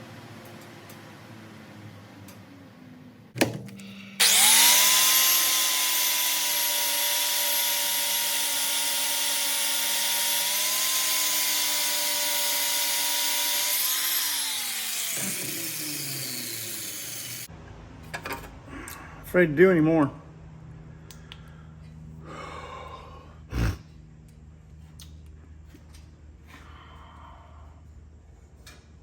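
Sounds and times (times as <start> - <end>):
power tool grinding with whine: 4.2 - 17.5.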